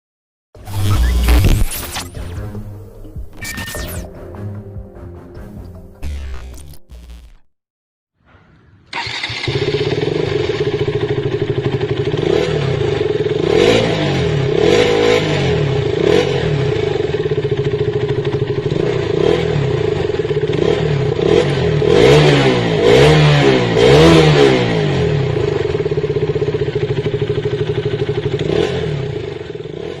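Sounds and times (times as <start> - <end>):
motorcycle engine idling: 8.9 - 14.8, 15.4 - 22.0, 24.4 - 30.0.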